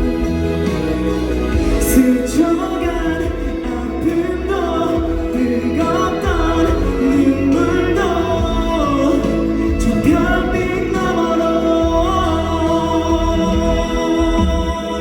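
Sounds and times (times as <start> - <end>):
band accompaniment with bass: 0.0 - 15.0
man singing pop ballad: 1.6 - 15.0.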